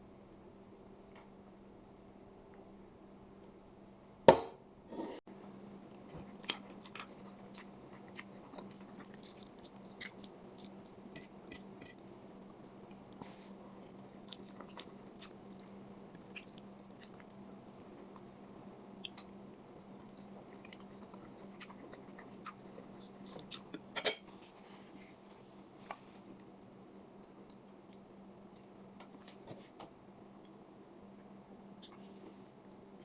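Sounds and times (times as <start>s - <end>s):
steady low hum: 0.0s - 33.0s
chewing and biting: 5.9s - 11.7s.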